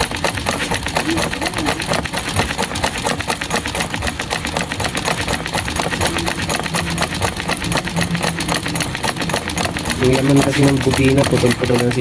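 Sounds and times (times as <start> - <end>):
sewing machine clicking: 0.0 - 12.0.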